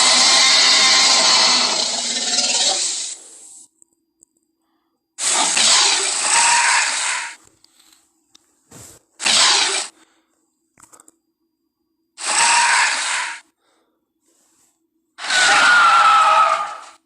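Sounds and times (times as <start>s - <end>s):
breathy hissing creature calls: 0.0s - 3.6s, 5.2s - 7.4s, 9.2s - 9.9s, 12.2s - 13.4s, 15.2s - 17.0s.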